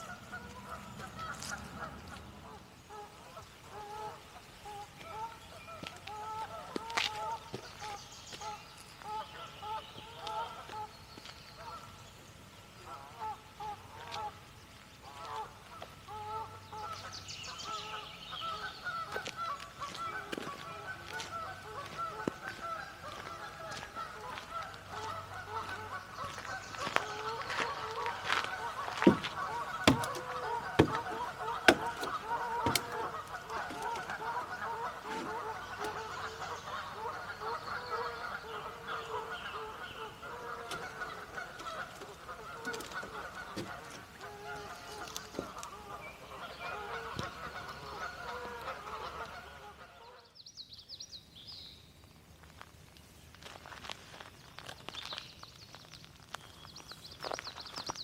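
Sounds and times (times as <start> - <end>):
geese honking: 0.0 - 8.4, 15.0 - 50.2.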